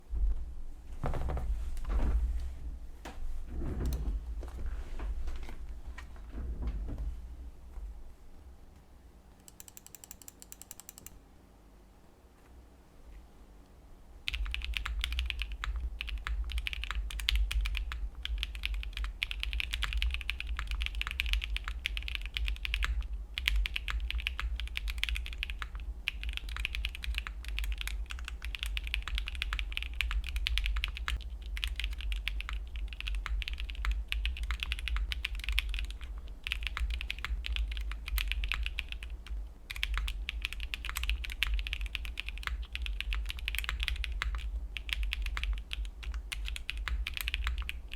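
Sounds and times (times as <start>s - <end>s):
fast mechanical keyboard typing: 9.5s - 11.2s, 14.3s - 47.9s.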